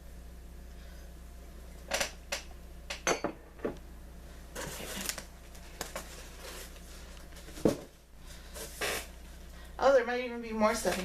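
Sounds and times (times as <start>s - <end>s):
packaging rustling: 4.6s - 7.7s.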